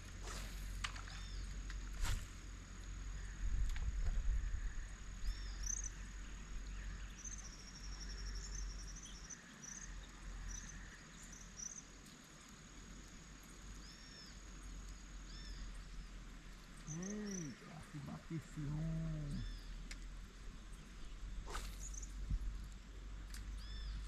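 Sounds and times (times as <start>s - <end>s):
insect drone: 0.0s - 24.0s
bird chirps: 5.2s - 11.8s, 16.8s - 19.8s, 20.7s - 22.2s, 23.5s - 24.0s.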